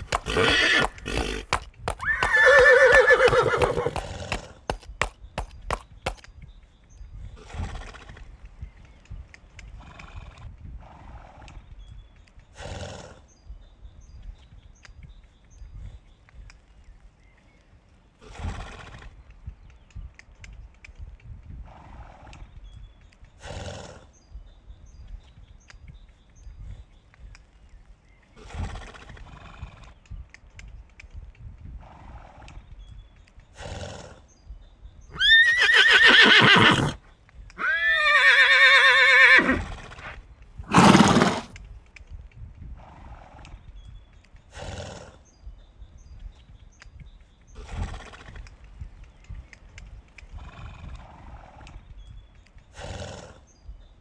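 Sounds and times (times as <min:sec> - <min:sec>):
horse whinnying: 0:00.0 - 0:06.2, 0:35.1 - 0:37.0, 0:37.6 - 0:41.6.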